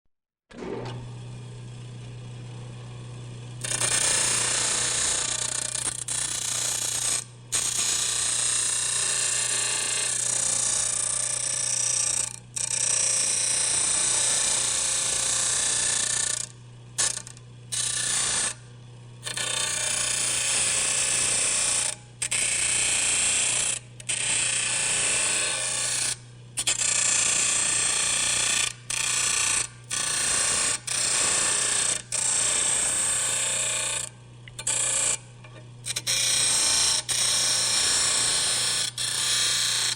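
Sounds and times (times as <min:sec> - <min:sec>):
whirring rattling mechanical noise: 0:00.5 - 0:02.6.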